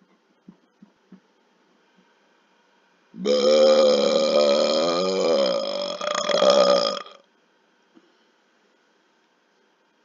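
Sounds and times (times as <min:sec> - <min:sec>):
man burping: 0:03.2 - 0:07.2.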